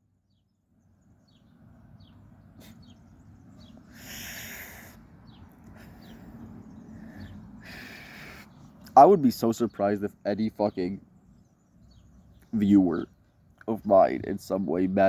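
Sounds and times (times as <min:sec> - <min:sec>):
faint outdoor background noise: 0:00.0 - 0:15.0
small birds chirping: 0:00.0 - 0:15.0
person exhaling: 0:03.9 - 0:05.0, 0:06.9 - 0:08.5.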